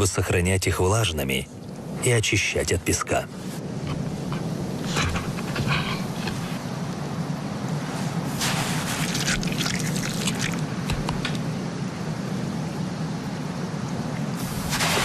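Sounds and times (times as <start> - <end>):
wet squelching and dribbling: 8.3 - 11.1
short crackles: 8.3 - 11.4, 14.4 - 15.0.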